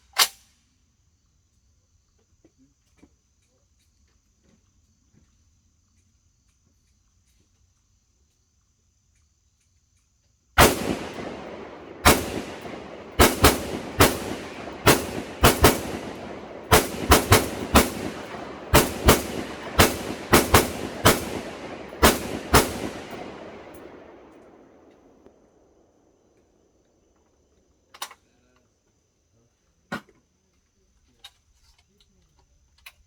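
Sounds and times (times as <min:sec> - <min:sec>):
rifle shots with ringing echo: 0:10.6 - 0:26.1.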